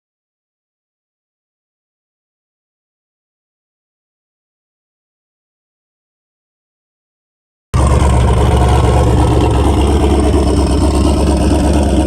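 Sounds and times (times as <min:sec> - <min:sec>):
car engine low rumble: 0:07.8 - 0:12.0.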